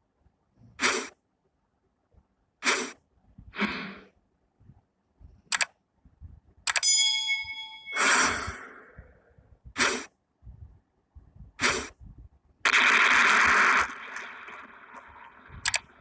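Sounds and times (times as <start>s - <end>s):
click: 5.5s - 5.7s
ringing ding: 6.8s - 8.4s.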